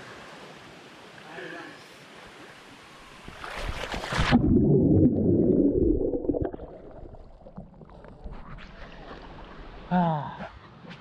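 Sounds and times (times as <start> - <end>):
water splashing and rushing: 3.0 - 9.9
underwater rumble and bubbling: 3.6 - 9.9.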